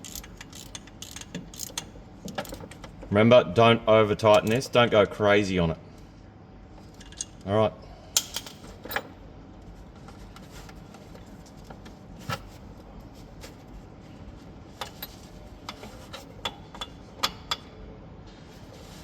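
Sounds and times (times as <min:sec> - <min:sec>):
metal tools clicking and knocking: 0:00.0 - 0:02.9, 0:04.4 - 0:04.6.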